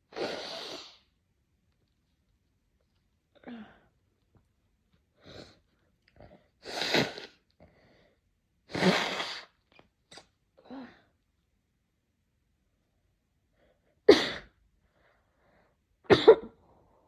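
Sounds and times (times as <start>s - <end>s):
breathing: 7.6s - 8.3s, 14.8s - 15.8s
person sneezing: 8.7s - 9.6s.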